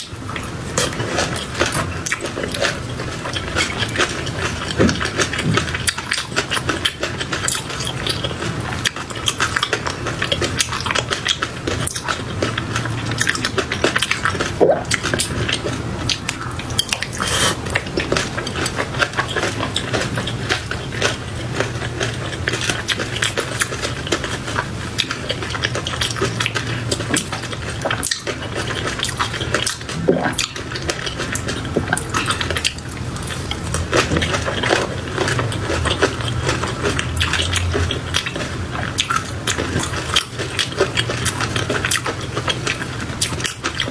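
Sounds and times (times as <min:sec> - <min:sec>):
mouth clicks and chewing: 0:00.0 - 0:43.9
steady low hum: 0:00.0 - 0:43.9.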